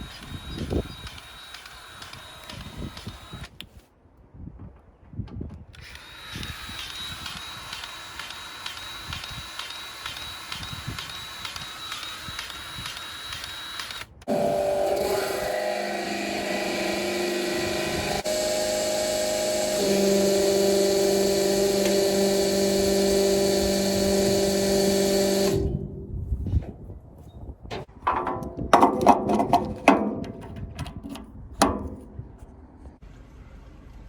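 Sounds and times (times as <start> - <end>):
machine whining: 13.6 - 26.2
machine drone: 14.3 - 26.2.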